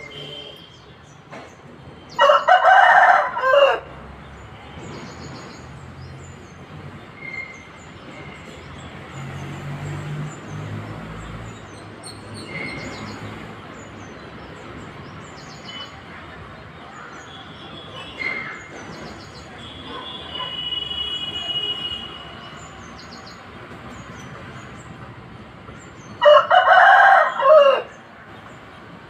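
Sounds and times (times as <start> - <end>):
rooster crowing: 2.2 - 3.9, 26.2 - 27.9.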